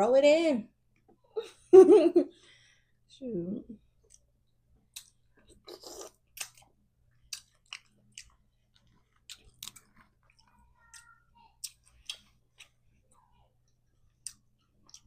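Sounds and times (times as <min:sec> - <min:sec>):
close chewing of seafood: 0:04.0 - 0:15.0.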